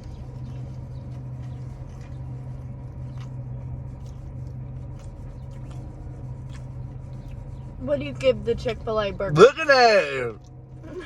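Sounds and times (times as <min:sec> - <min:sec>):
people chewing: 0:00.0 - 0:07.8
steady low hum: 0:00.0 - 0:11.0.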